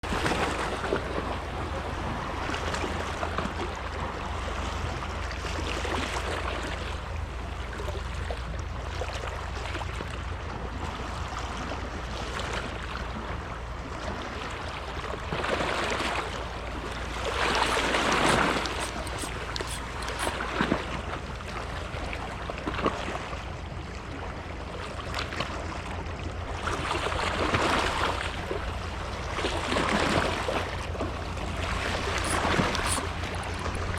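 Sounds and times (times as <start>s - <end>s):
water rushing and splashing: 14.3s - 33.9s.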